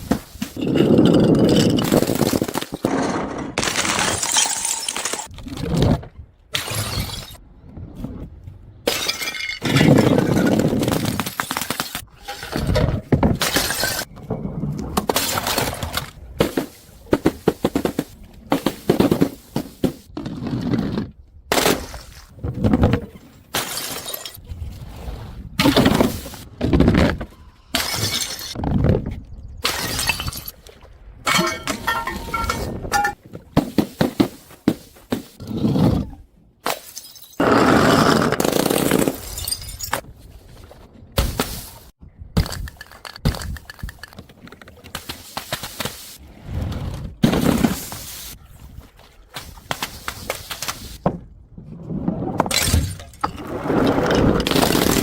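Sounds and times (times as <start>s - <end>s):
glass bottles smashing: 3.6s - 5.3s, 8.9s - 12.7s, 13.4s - 14.1s, 23.6s - 24.4s, 27.7s - 28.6s, 29.6s - 30.5s, 31.3s - 33.2s, 36.8s - 37.4s, 38.8s - 40.0s.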